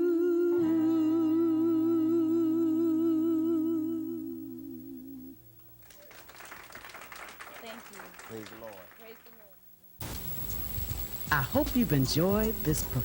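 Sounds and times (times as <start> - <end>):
held sung note with vibrato: 0.0 - 5.4.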